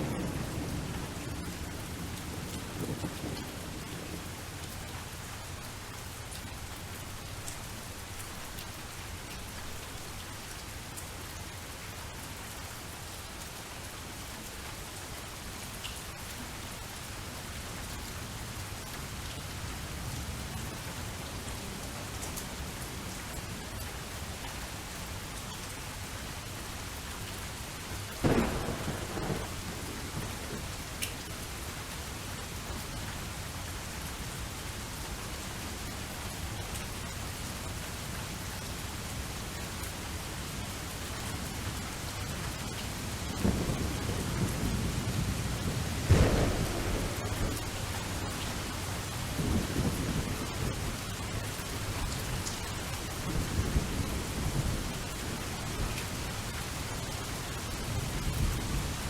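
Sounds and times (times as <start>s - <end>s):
low thunder rumbling: 0.0s - 4.4s, 28.2s - 30.8s, 43.3s - 52.2s
steady rain falling: 0.0s - 59.0s
sharp thunderclap: 28.2s - 30.6s, 43.4s - 48.7s.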